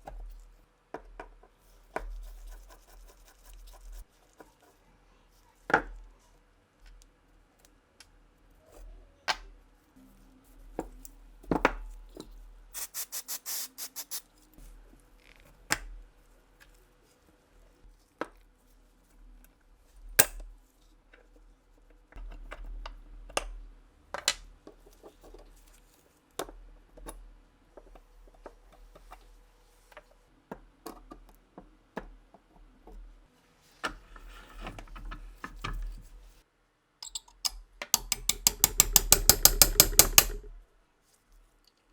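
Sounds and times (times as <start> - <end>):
metal tools and parts clinking: 37.0 - 40.5.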